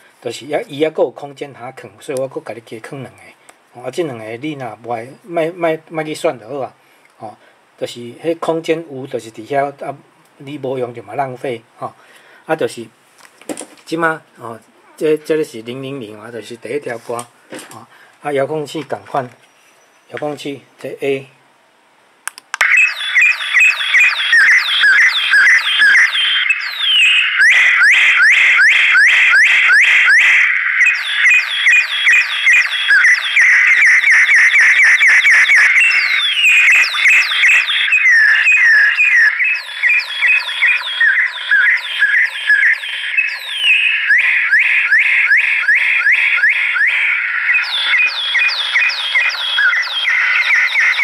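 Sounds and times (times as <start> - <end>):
clicks: 22.3 - 22.7
electronic chirps sweeping in pitch: 22.6 - 51.0.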